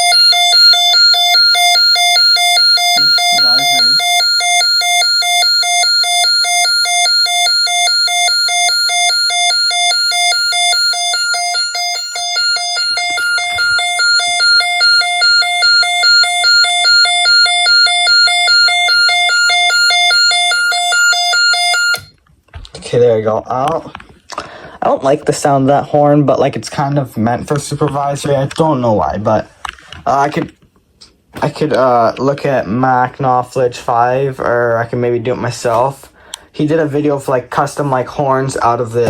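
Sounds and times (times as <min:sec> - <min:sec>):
buzzy electronic alarm beeps: 0:00.0 - 0:22.1.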